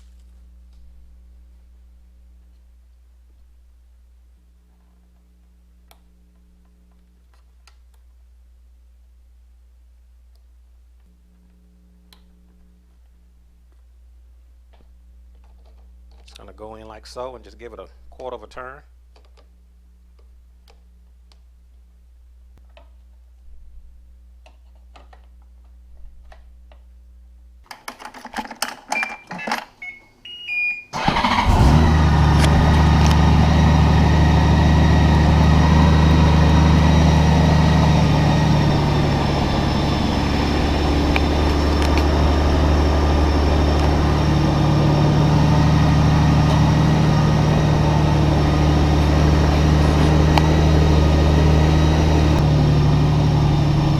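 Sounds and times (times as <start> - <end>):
motorcycle engine starting and idling: 30.9 - 53.9.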